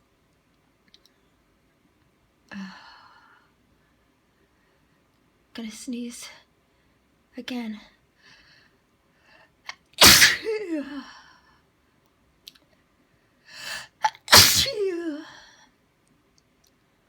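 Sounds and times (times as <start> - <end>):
person sneezing: 10.0 - 10.9, 14.0 - 15.1
quick in-breath: 13.4 - 14.0.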